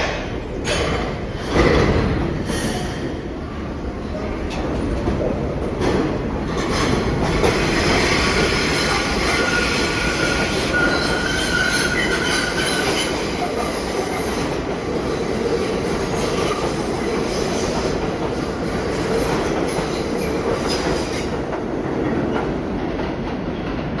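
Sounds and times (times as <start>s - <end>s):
subway train rumbling: 0.0s - 24.0s
wheels squealing: 7.7s - 13.3s.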